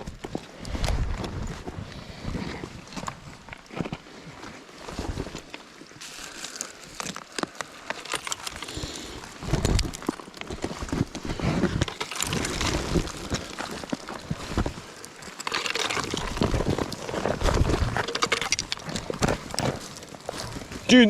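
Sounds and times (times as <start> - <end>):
scrambling over loose rock: 6.5 - 21.0.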